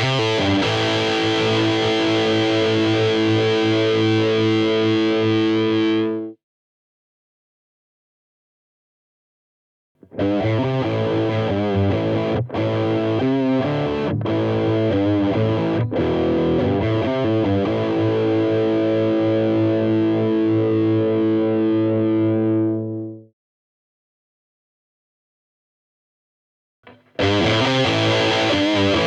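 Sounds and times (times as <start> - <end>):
distorted electric guitar: 0.0 - 6.4, 10.0 - 23.3, 26.9 - 29.0.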